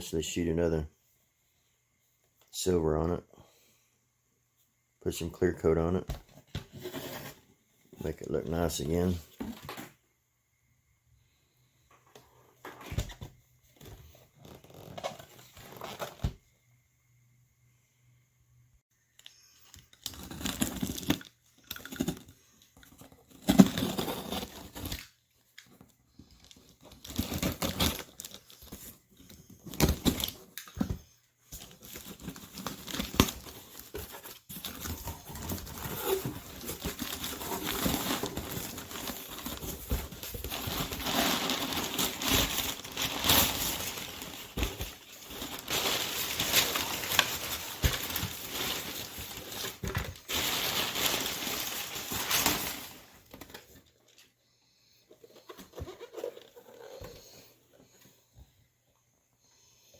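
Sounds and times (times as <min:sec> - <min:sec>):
packaging crumpling and tearing: 0:31.6 - 0:53.1.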